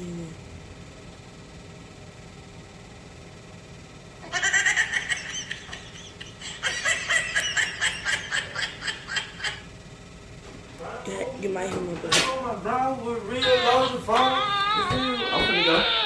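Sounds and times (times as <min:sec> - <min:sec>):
high-pitched cries from phone speaker: 0:13.4 - 0:16.0.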